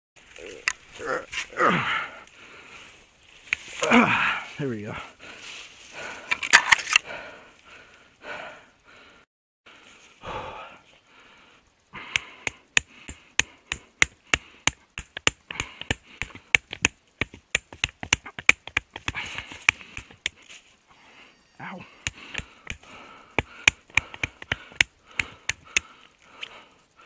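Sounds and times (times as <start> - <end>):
heavy breathing: 0.2 - 16.6, 19.0 - 27.0
knife chopping wood: 12.1 - 20.4, 22.0 - 25.9.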